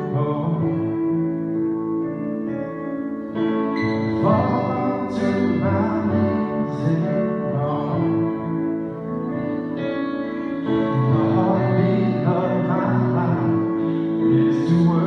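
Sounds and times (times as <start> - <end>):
person singing: 0.0 - 1.7, 3.7 - 9.1, 10.0 - 15.0.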